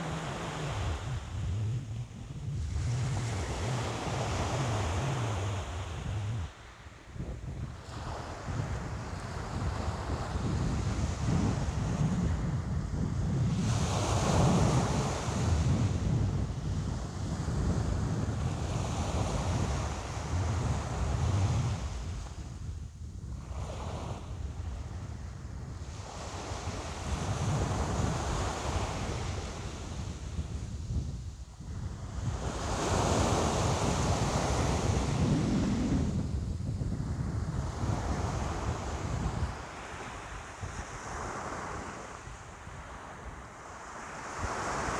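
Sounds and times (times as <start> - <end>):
ocean waves breaking: 0.0 - 7.0.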